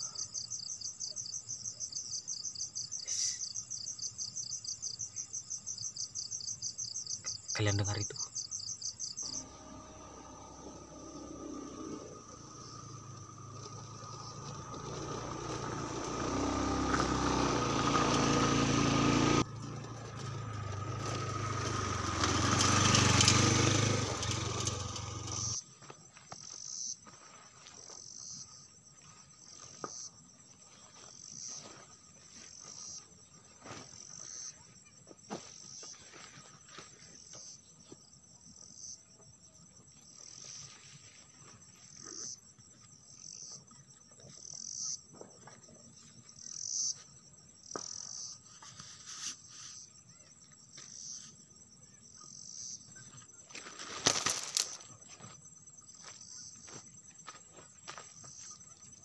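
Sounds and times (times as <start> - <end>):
crickets chirping: 0.0 - 59.0
loud low rumbling drone: 9.3 - 16.5.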